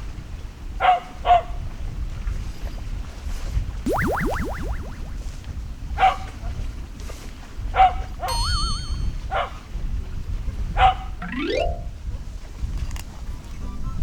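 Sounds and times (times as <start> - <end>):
dog barking: 0.8 - 1.5
rising electronic sweep: 3.9 - 5.4
wavering whistle-like tone: 3.9 - 5.4, 8.3 - 9.2.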